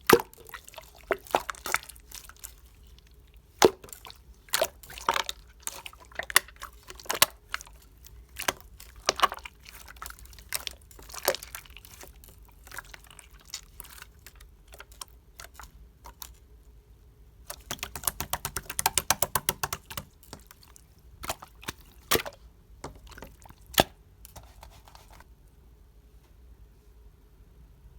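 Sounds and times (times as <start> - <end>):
slime squished by hand: 17.5 - 25.2.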